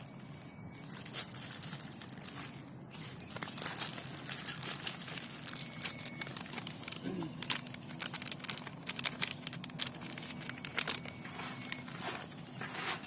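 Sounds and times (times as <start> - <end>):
plastic bag crinkling: 0.8 - 13.0.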